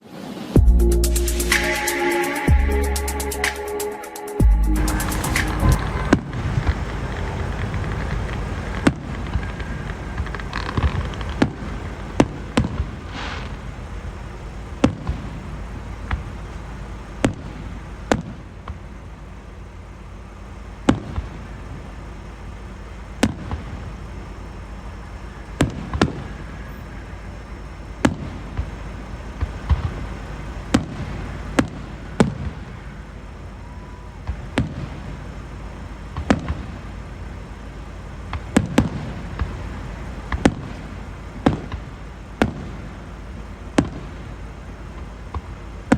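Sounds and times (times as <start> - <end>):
steady low rumble: 0.6 - 3.8, 4.4 - 20.0
firework bangs: 4.8 - 45.9.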